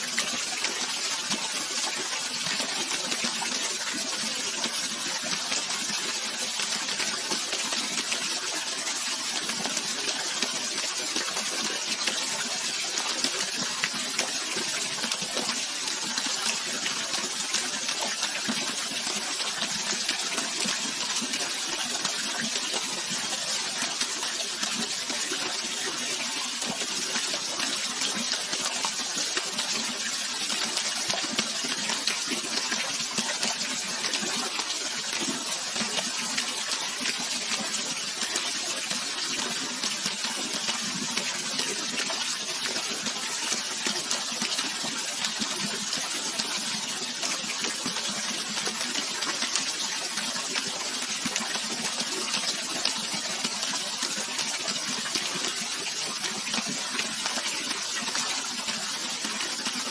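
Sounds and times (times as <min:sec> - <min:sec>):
rush of running water: 0:00.0 - 0:59.9.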